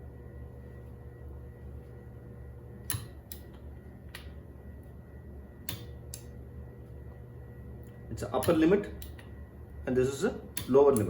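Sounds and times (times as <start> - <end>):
sharp clicks: 5.6 - 6.3.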